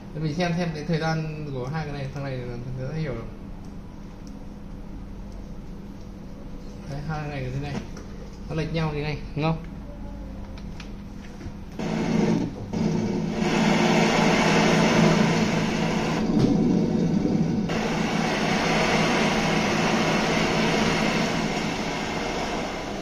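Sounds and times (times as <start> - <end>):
water spraying: 13.3 - 23.0.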